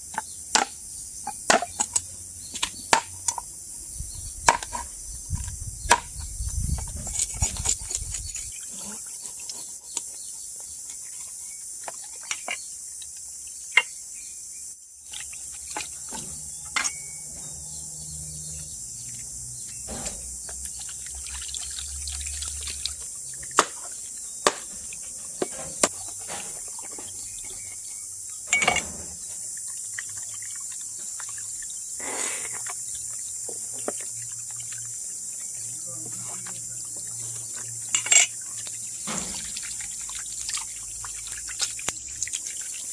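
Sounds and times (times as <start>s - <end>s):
insects chorus: 0.0s - 42.9s
handling clicks and knocks: 23.0s - 27.8s, 28.4s - 29.2s.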